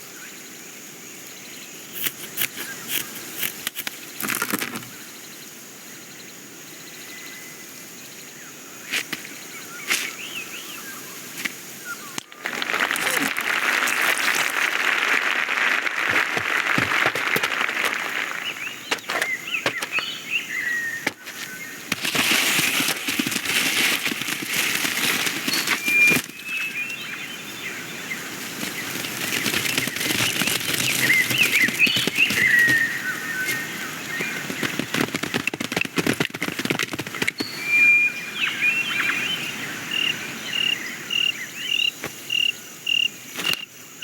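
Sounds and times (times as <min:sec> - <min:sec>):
fluttering insect wings: 0:11.3 - 0:37.5.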